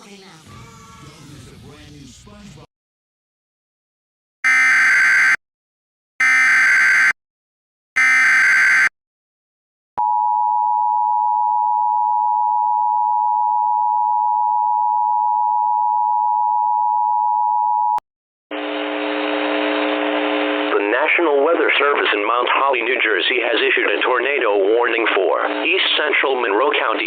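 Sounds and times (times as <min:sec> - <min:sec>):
two-tone attention signal: 0:04.5 - 0:05.4, 0:08.0 - 0:08.9.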